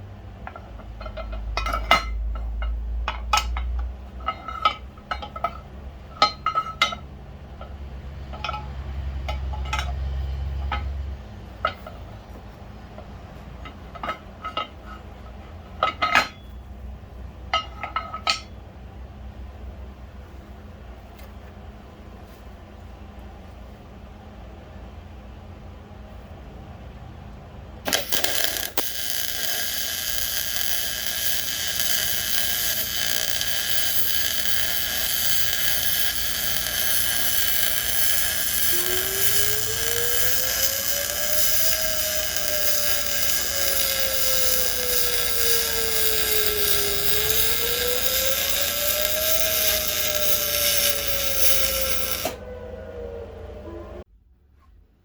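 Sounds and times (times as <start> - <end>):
small motor whining: 27.9 - 52.5
low tone rising and falling: 38.2 - 54.1.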